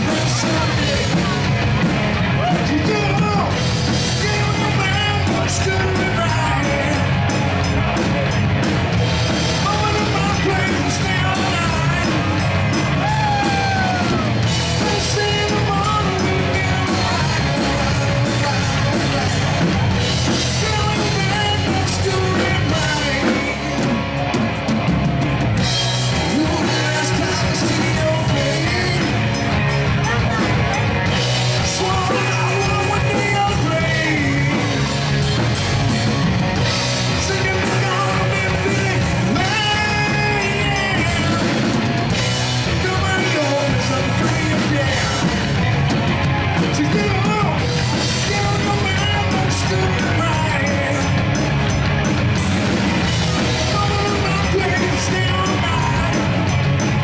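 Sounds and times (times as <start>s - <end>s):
person yelling lead vocal: 0.0s - 7.4s, 9.5s - 24.0s, 26.2s - 35.3s, 36.6s - 51.4s, 53.3s - 56.6s
drum kit: 0.0s - 57.0s
rock band playing: 0.0s - 57.0s.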